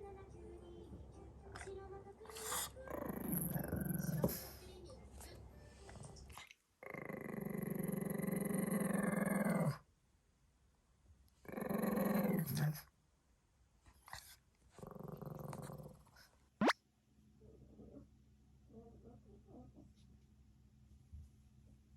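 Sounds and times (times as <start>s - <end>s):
dog growling: 1.6s - 4.6s, 6.3s - 9.8s, 11.4s - 12.8s, 14.1s - 16.2s.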